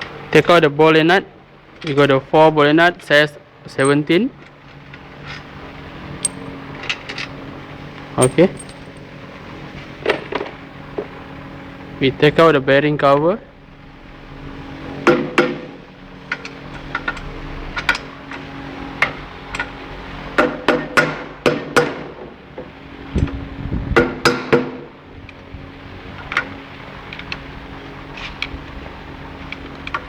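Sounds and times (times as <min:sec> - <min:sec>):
steady low hum: 0:00.0 - 0:20.4
metal tools knocking and clinking: 0:06.2 - 0:07.2, 0:08.2 - 0:09.2, 0:10.0 - 0:10.5.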